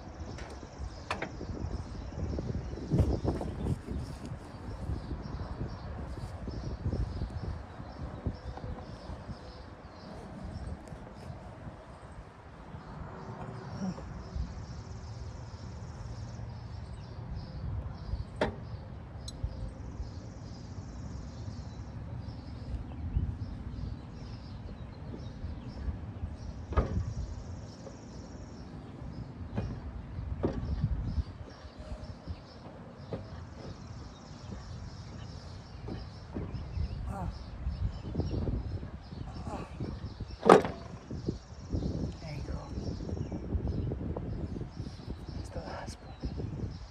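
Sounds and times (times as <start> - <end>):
steady low rumble: 0.0 - 27.6, 41.0 - 46.9.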